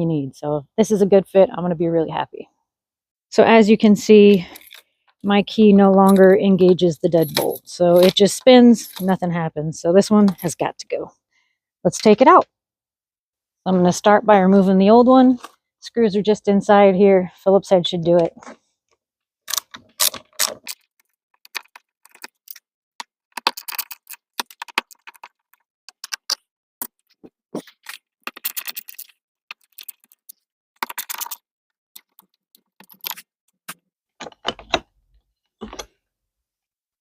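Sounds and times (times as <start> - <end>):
small metallic clicks and rattles: 19.5 - 22.6, 23.3 - 27.1, 27.7 - 31.4, 32.0 - 34.8.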